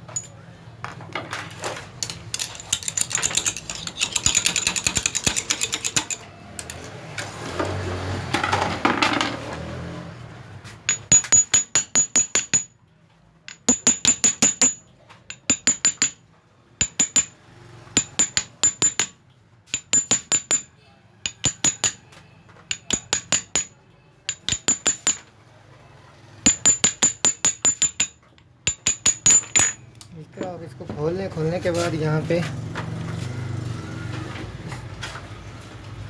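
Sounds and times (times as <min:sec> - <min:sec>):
hammer tapping on metal: 0:00.0 - 0:00.3, 0:02.0 - 0:06.9, 0:10.9 - 0:12.8, 0:13.5 - 0:16.2, 0:16.8 - 0:17.4, 0:18.0 - 0:20.7, 0:21.3 - 0:25.3, 0:26.4 - 0:29.9
metal parts scraping: 0:01.3 - 0:07.4, 0:28.7 - 0:29.9.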